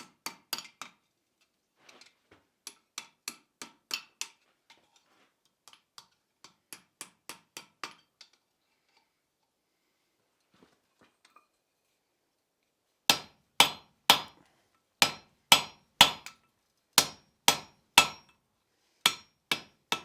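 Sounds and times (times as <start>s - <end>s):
hammer striking steel on anvil: 13.1s - 14.4s, 15.0s - 16.4s, 17.0s - 18.4s, 19.1s - 20.0s.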